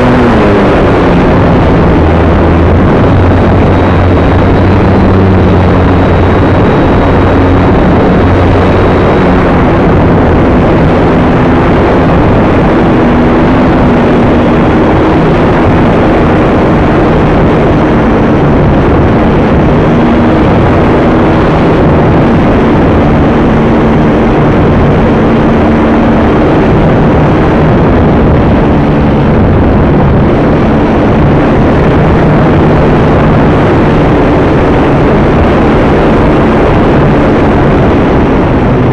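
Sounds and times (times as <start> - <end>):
motor tones shifting pitch: 0.0 - 32.9
wind rush and propeller noise: 0.0 - 38.9.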